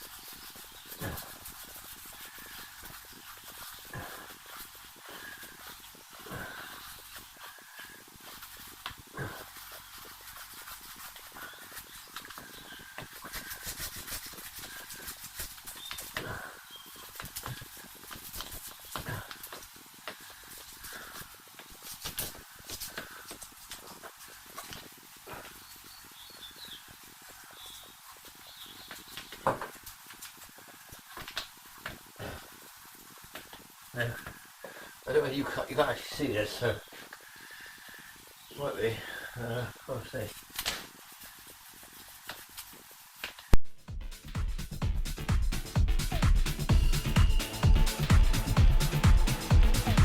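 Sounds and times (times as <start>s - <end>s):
brush scrubbing car wheel: 0.0s - 19.2s.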